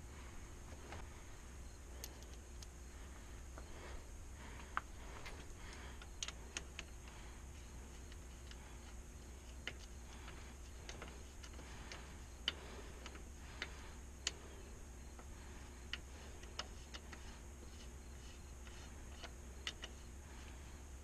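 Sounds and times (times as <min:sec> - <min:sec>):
steady low hum: 0:00.0 - 0:21.0
hand tools clicking on metal parts: 0:08.0 - 0:14.4.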